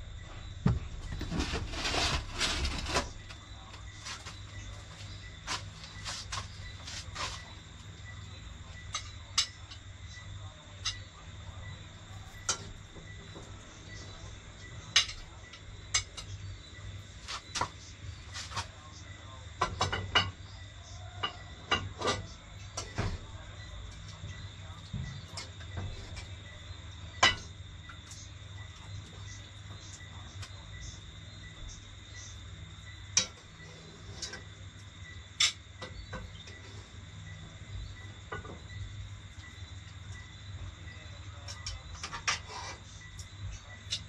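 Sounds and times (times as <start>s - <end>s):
high insect chirr: 0.0s - 44.0s
cutlery and dishes clinking: 19.6s - 20.4s, 21.1s - 23.2s.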